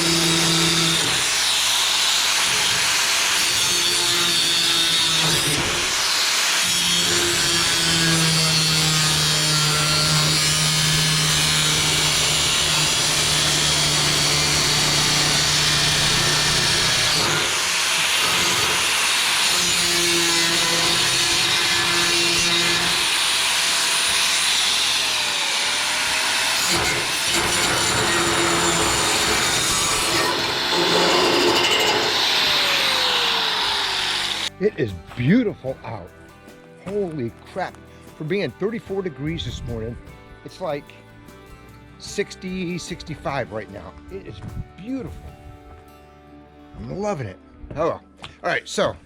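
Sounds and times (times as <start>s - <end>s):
power tool cutting sheet metal: 0.0s - 34.5s.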